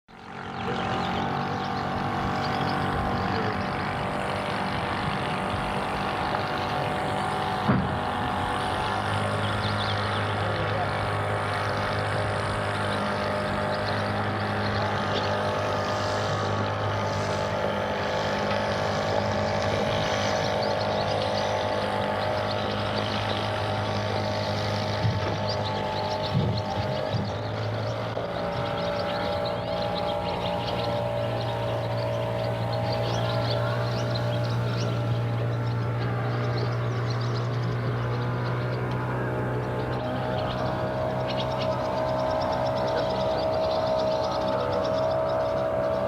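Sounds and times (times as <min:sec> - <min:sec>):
deep engine drone: 0:00.0 - 0:46.0
boat engines humming: 0:00.1 - 0:46.0.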